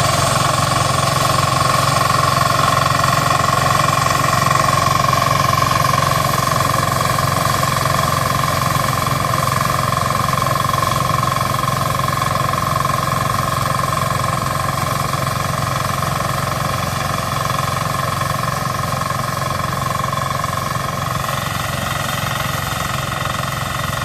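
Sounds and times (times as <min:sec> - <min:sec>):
steady high whine: 0:00.0 - 0:11.3
combine harvester engine running: 0:00.0 - 0:24.0.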